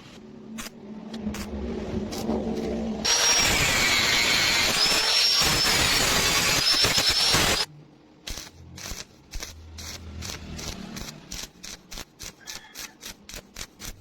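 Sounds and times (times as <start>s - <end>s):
scraping strokes on metal: 8.3s - 14.0s.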